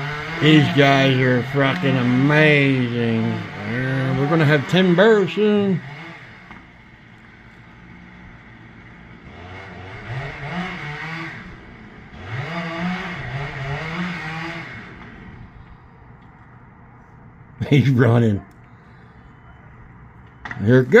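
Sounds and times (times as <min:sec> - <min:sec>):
two-stroke chainsaw revving: 0:00.0 - 0:15.9.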